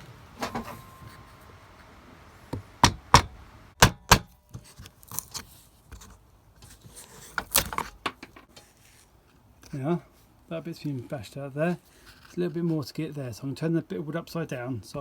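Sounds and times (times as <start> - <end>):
chisel being struck into wood: 2.6 - 4.3.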